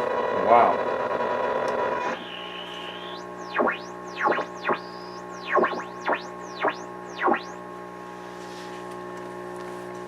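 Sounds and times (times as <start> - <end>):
radio tuner whistles and squeals: 2.0 - 7.7
steady hum: 2.1 - 9.2.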